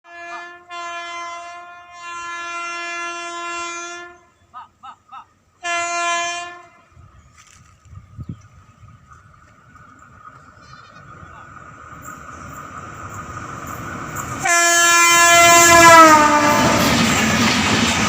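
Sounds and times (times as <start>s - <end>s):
locomotive horn blasts: 0.0s - 4.4s, 5.6s - 7.0s, 14.4s - 17.0s.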